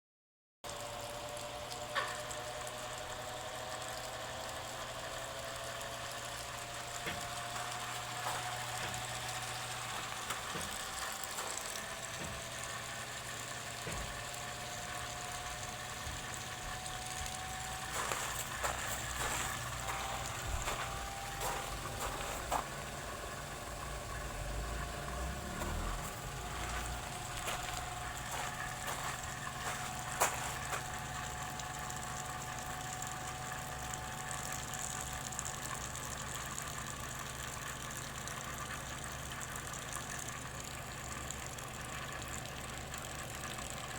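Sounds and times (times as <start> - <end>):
spin dryer motor whine: 0.7 - 43.9.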